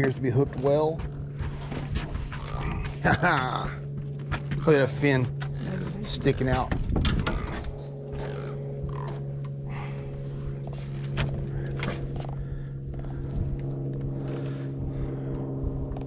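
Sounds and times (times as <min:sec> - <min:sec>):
boat motor humming: 0:00.0 - 0:16.0
knocks and clicks on boat: 0:06.4 - 0:07.8.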